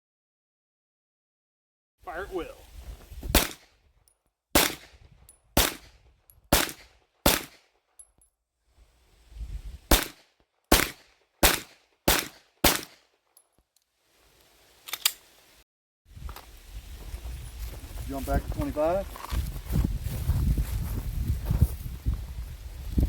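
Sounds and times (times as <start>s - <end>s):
pistol shots: 3.3s - 3.7s, 4.6s - 5.0s, 5.6s - 7.7s, 9.9s - 13.1s.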